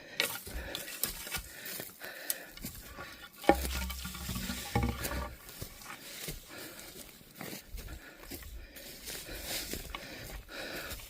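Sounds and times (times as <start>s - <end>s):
footsteps crunching on trail: 0.0s - 11.0s.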